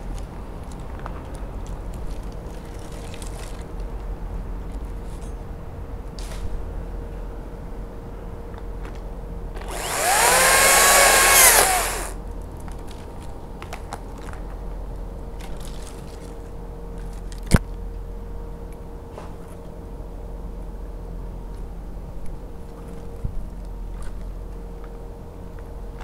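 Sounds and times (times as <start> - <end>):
battery chainsaw whine: 9.6 - 12.2.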